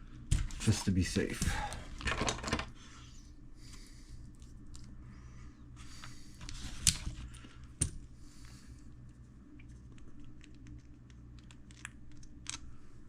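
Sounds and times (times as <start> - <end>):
low steady hum: 0.0 - 13.0
small parts and tools clicking: 9.9 - 12.7.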